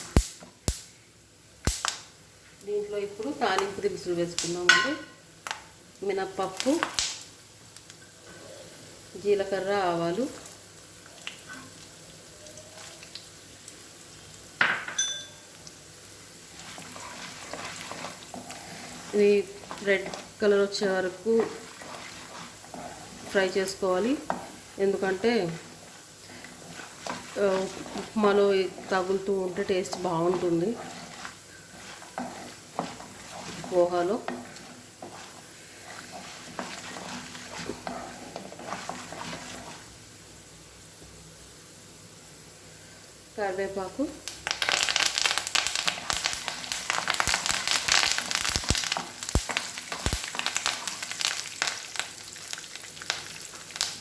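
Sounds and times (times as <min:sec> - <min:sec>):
spices sizzling in hot oil: 0:00.0 - 0:54.0
spoon scraping a pan: 0:04.7 - 0:05.1, 0:16.5 - 0:39.9, 0:45.8 - 0:52.0
small crackles: 0:06.4 - 0:08.5, 0:10.3 - 0:14.4, 0:15.6 - 0:20.4, 0:21.0 - 0:39.9, 0:44.2 - 0:54.0
metallic clink: 0:14.9 - 0:15.4.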